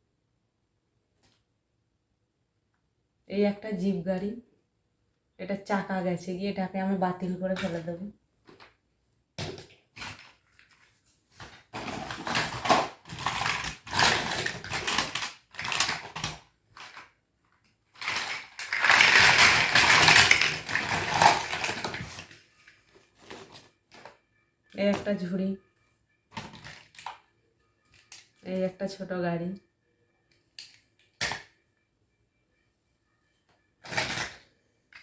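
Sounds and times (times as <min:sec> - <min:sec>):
plastic toys rustling and knocking: 0:07.4 - 0:24.2, 0:26.3 - 0:28.7, 0:30.3 - 0:31.6, 0:33.8 - 0:35.0.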